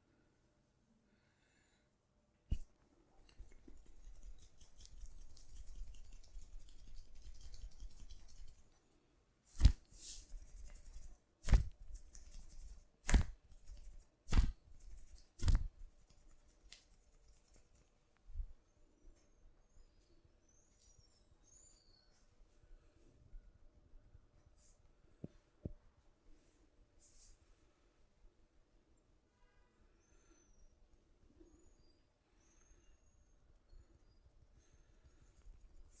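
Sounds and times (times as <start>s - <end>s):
scratchy rubbing of hands: 3.3s - 8.7s, 9.5s - 17.9s.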